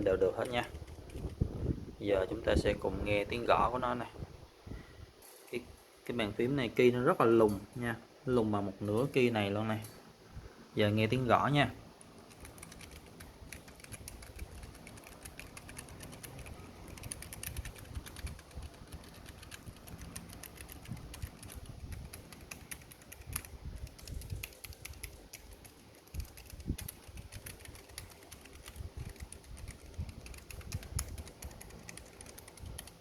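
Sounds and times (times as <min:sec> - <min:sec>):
mechanical keyboard typing: 0:12.0 - 0:33.0.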